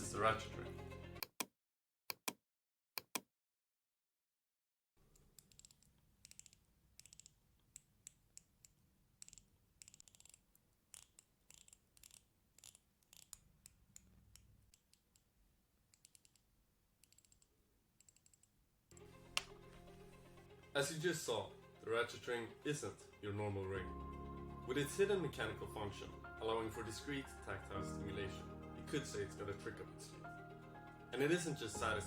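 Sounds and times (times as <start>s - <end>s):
ring ratchet clicks: 9.2s - 13.4s.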